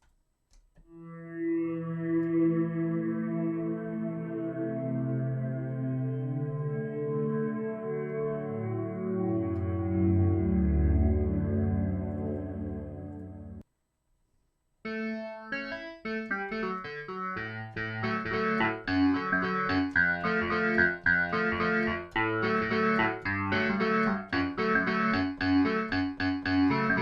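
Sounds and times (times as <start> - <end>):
electric piano notes and chords: 2.1 - 13.6, 14.9 - 27.0
low bass notes: 16.1 - 27.0.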